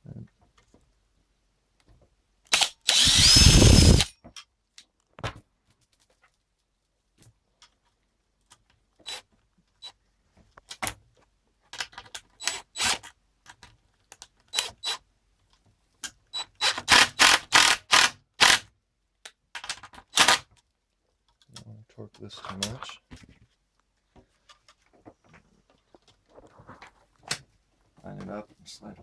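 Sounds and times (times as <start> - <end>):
small hard parts clicking and rattling: 2.5 - 4.1.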